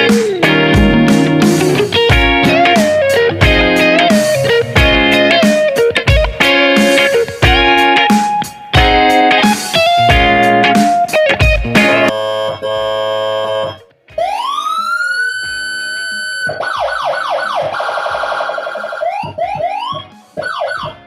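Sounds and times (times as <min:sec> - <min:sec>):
guitar music: 0:00.0 - 0:17.8, 0:18.5 - 0:21.0
electronic siren wailing: 0:12.1 - 0:21.0.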